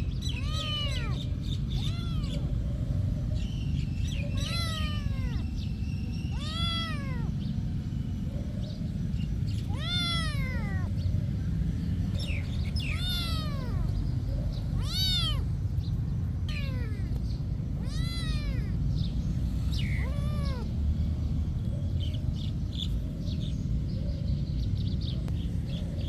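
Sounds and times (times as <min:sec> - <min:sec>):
low background rumble: 0:00.0 - 0:26.0
cat meowing: 0:00.2 - 0:07.5, 0:09.5 - 0:11.2, 0:12.2 - 0:20.8.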